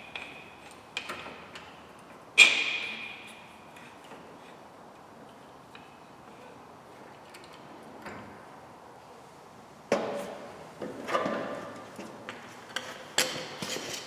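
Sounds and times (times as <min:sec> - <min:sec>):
faint shop room noise: 0:00.0 - 0:14.0.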